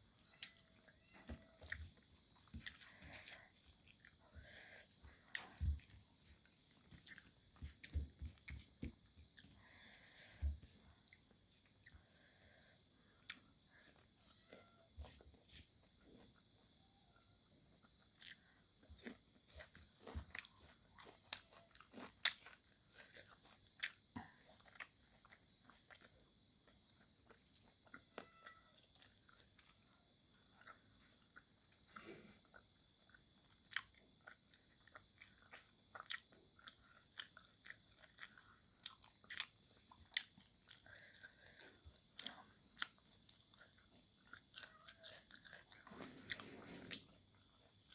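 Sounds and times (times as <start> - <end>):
insects chirping: 0.0 - 47.9
chewing and mouth clicks: 0.2 - 15.2, 17.6 - 47.9.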